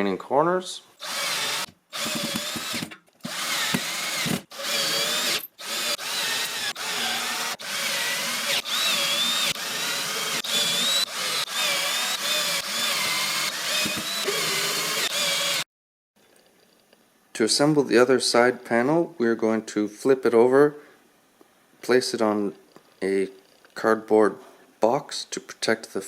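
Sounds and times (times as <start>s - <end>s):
power drill driving screws: 1.0s - 15.6s.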